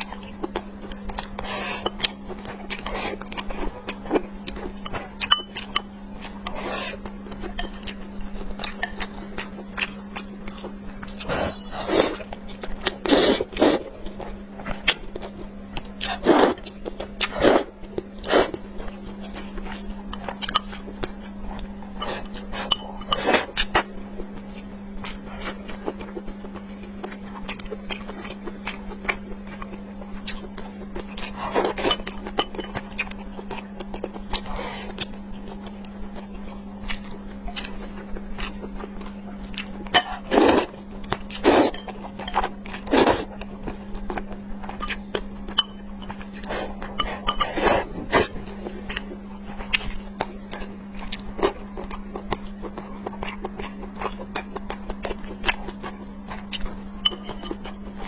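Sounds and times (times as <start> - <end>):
chewing and mouth sounds: 0.0 - 58.0
steady low hum: 0.0 - 58.0.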